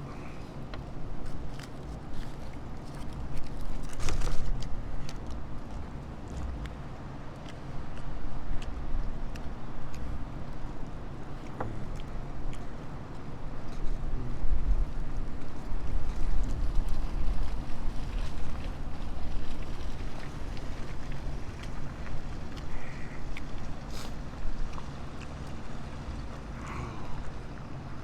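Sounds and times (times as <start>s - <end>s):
wind buffeting microphone: 14.0s - 21.5s.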